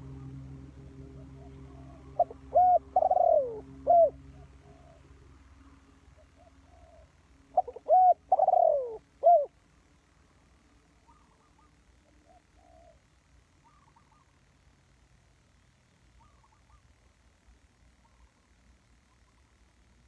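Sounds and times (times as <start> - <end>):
dove cooing: 0.0 - 5.2, 6.2 - 9.6, 11.0 - 14.4, 16.2 - 17.0
low hum: 0.0 - 20.0.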